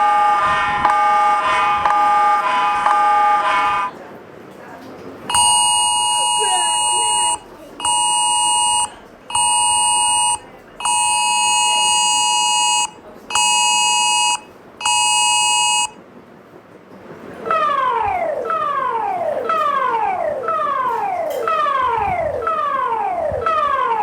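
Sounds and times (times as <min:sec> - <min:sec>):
two-tone alert beeps: 0:05.3 - 0:15.9
falling siren-like sweeps: 0:17.5 - 0:24.0.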